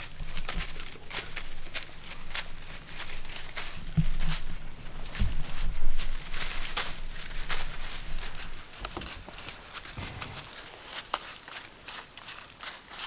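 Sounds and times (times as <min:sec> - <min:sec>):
deer hooves crunching dry leaves: 0:00.0 - 0:13.0
low thumps: 0:09.9 - 0:10.5.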